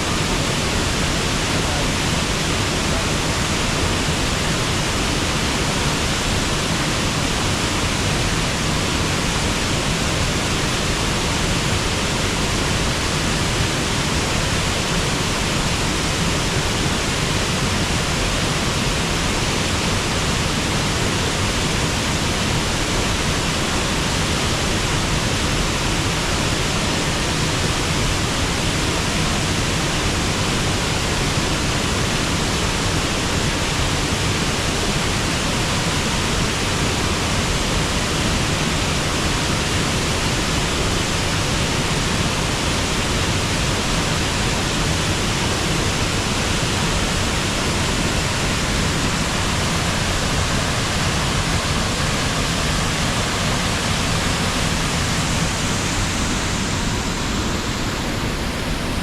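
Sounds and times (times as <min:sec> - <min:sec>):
waterfall rushing: 0:00.0 - 0:59.0.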